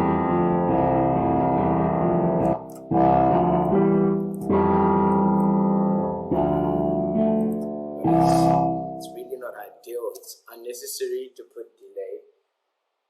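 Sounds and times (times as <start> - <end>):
electronic keyboard chords with reverb: 0.0 - 9.4.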